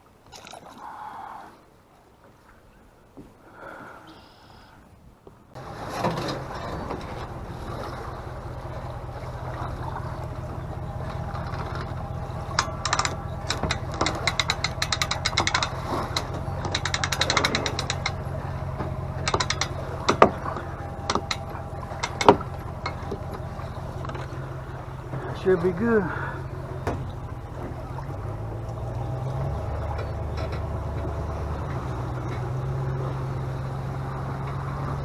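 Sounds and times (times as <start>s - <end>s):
motor humming: 5.6s - 35.0s
rapid mechanical clicking: 11.3s - 24.3s
sharp knocks: 11.3s - 24.3s.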